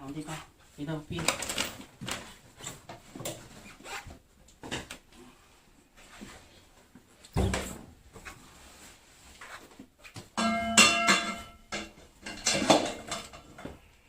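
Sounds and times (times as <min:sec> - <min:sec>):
parts clicking and knocking: 0:10.2 - 0:13.8.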